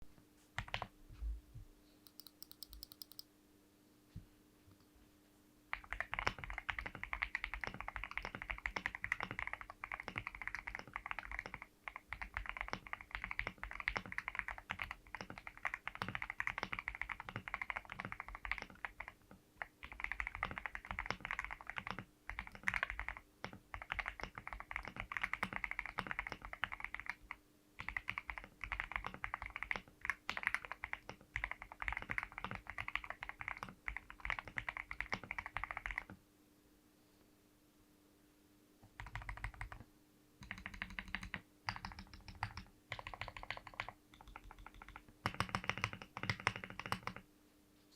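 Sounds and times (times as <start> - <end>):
faint steady hum: 0.0 - 47.9
typing on mechanical keyboard: 0.6 - 0.9, 2.1 - 3.2, 5.7 - 36.2, 38.8 - 39.8, 40.4 - 47.2.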